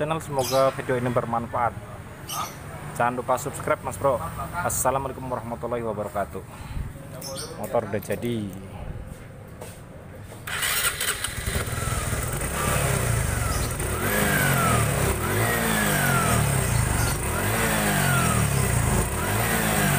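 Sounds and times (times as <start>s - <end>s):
motorcycle engine starting: 10.4s - 19.9s
engine revving in throttle blips: 10.5s - 19.9s.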